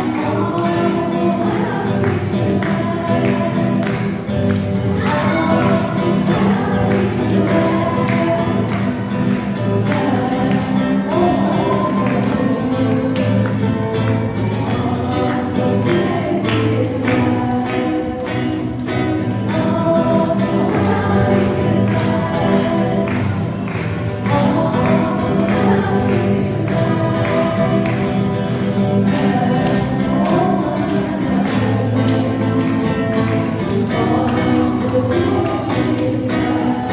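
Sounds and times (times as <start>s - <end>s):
song with singing and beat: 0.0s - 36.9s.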